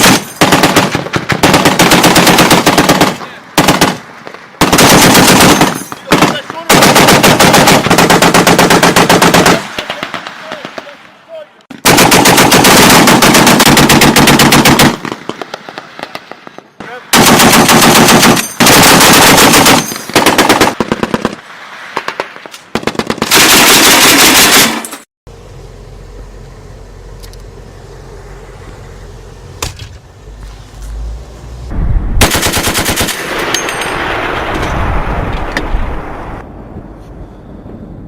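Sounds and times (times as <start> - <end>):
heavy machine gun bursts: 4.6 - 10.2, 11.8 - 15.1, 17.1 - 20.8, 32.2 - 34.2
low rumble: 25.3 - 38.0.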